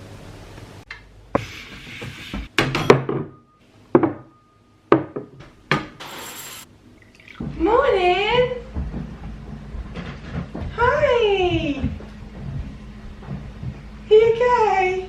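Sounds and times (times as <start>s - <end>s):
objects knocking and clattering: 8.7s - 11.0s.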